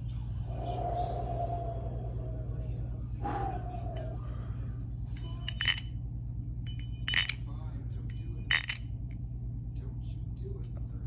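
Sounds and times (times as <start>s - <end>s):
steady low hum: 0.0s - 8.9s
metal knife handles clacking: 5.2s - 5.9s, 6.7s - 7.4s, 8.5s - 8.8s.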